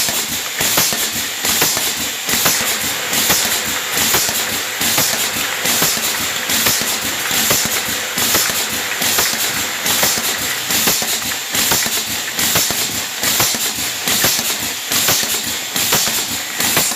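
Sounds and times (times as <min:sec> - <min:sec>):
machine clattering and knocking: 0:00.7 - 0:16.9
air hissing: 0:02.3 - 0:12.8.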